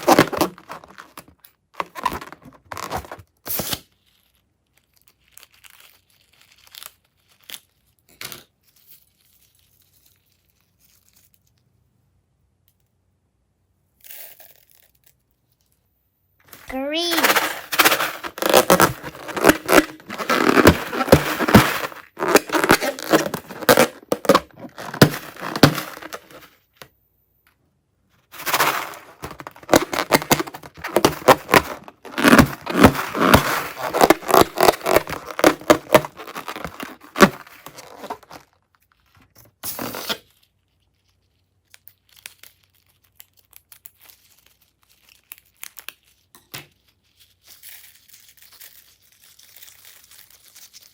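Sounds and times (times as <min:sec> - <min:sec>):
slime crackling and tearing: 0:00.0 - 0:08.2, 0:16.9 - 0:26.5, 0:28.3 - 0:39.0, 0:40.2 - 0:50.9.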